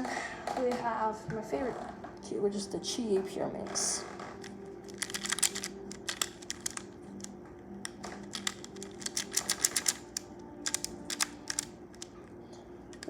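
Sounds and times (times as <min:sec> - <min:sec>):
speedcube clicking: 0:04.8 - 0:12.1.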